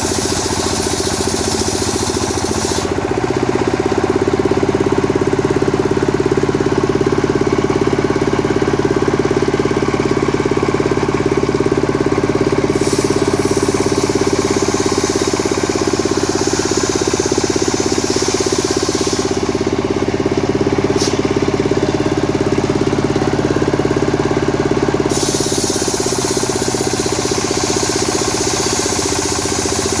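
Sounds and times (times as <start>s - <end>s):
chainsaw running: 0.0s - 30.0s
high hiss: 12.7s - 19.6s, 25.1s - 30.0s.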